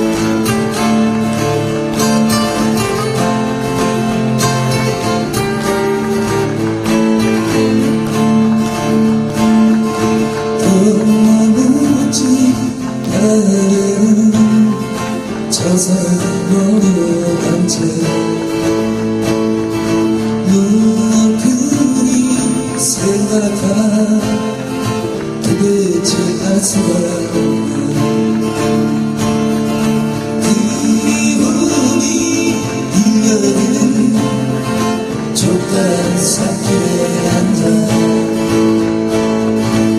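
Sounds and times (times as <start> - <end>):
acoustic guitar playing: 0.0 - 39.9
man singing: 10.2 - 19.1, 20.2 - 29.1, 30.1 - 39.9.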